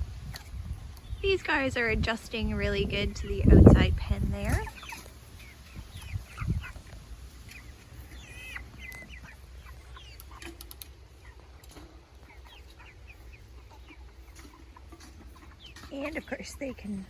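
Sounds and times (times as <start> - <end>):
low rumble: 0.0 - 4.5
chicks peeping and cheeping: 0.0 - 17.0.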